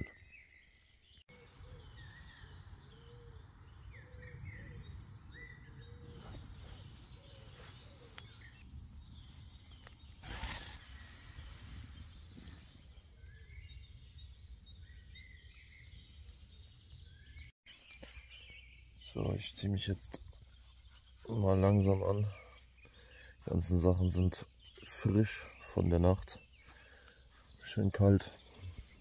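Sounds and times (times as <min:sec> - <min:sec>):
songbirds singing: 0:00.0 - 0:29.0.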